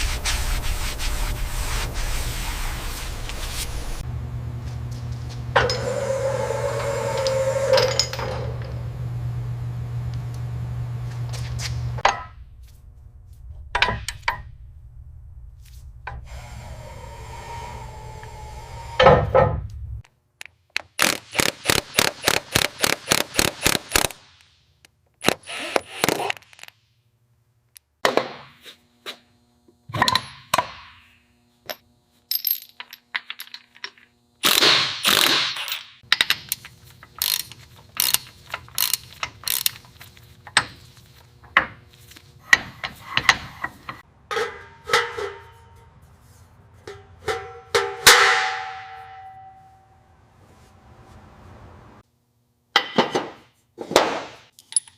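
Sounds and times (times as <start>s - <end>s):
low hum: 0.0s - 20.0s, 48.6s - 52.6s.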